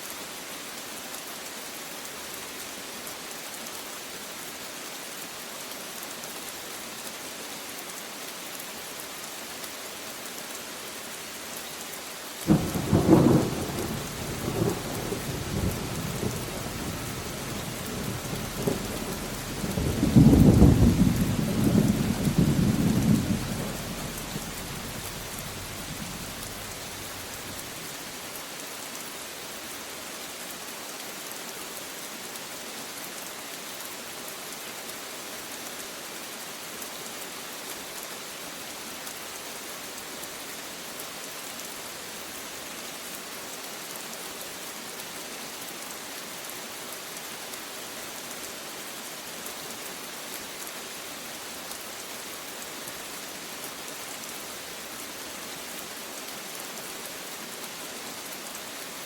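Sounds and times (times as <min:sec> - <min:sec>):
steady rain falling: 0:00.0 - 0:59.0
thunder rumbling: 0:12.5 - 0:27.6.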